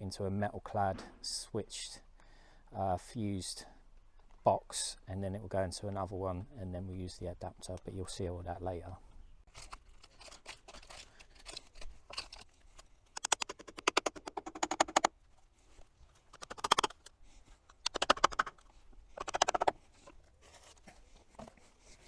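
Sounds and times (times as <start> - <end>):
rapid rasping scraping: 9.5 - 15.1, 16.1 - 20.8.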